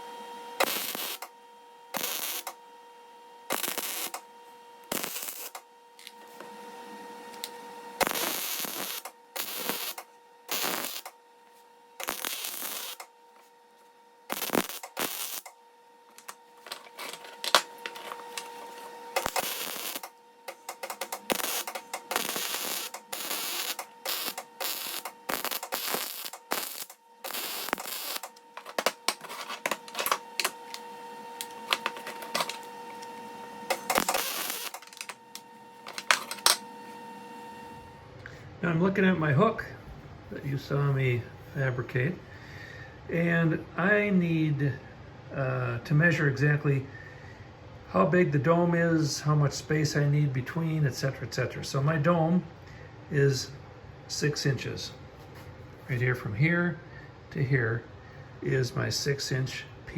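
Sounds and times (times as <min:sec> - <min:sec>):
steady hum: 0:00.0 - 0:59.9
welding arc crackle: 0:00.6 - 0:01.3, 0:01.9 - 0:02.6, 0:03.5 - 0:06.1, 0:07.3 - 0:11.2, 0:12.0 - 0:13.1, 0:14.2 - 0:30.8, 0:31.4 - 0:36.6.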